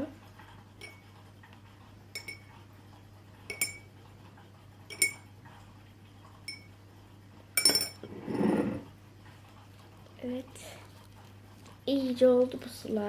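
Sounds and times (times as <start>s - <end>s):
spoon clinking against bowl: 2.2s - 2.5s, 3.5s - 3.9s, 4.9s - 5.3s, 6.5s - 6.7s, 7.6s - 8.0s.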